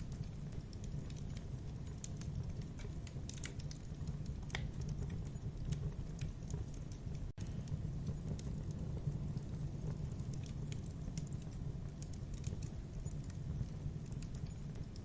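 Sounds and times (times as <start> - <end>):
burning wood crackling: 0.0 - 15.0
low rumble of flames: 0.0 - 15.0.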